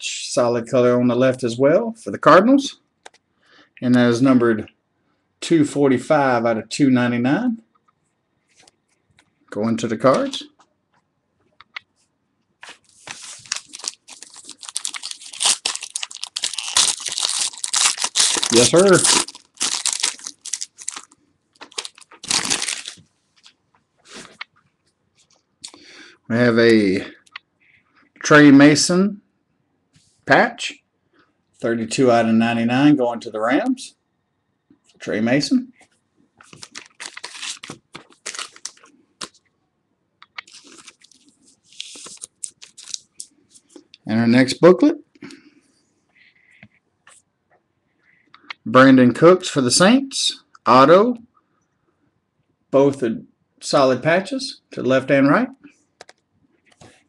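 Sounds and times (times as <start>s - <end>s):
card pack wrapper crinkling: 12.6s - 24.5s, 36.4s - 39.4s, 40.4s - 43.3s.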